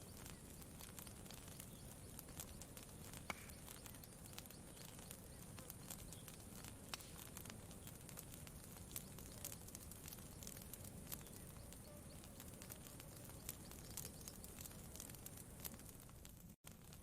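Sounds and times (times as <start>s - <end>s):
campfire crackling: 0.0s - 17.0s.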